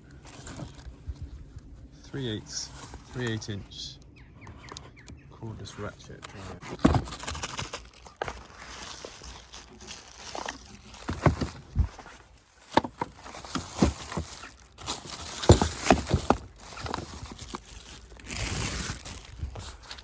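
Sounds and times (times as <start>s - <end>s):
tool handling knocks and rustles: 6.2s - 8.7s, 10.3s - 17.7s.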